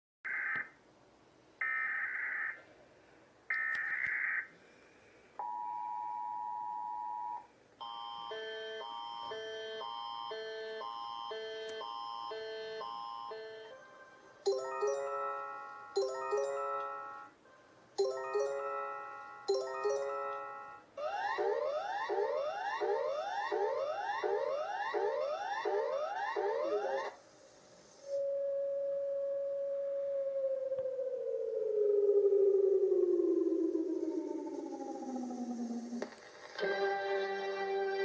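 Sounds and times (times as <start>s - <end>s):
alternating electronic alarm: 1.6s - 2.6s, 7.8s - 17.4s, 18.0s - 27.2s
steady attention tone: 5.4s - 27.2s
descending chime: 12.4s - 17.3s, 18.0s - 20.8s.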